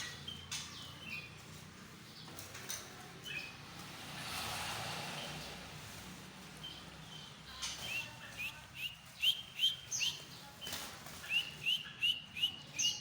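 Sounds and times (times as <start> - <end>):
songbird whistling: 7.9 - 10.2, 11.2 - 13.0.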